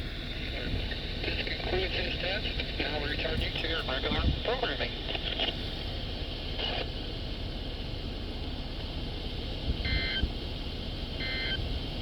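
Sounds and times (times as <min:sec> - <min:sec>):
radio hiss: 0:00.4 - 0:07.0.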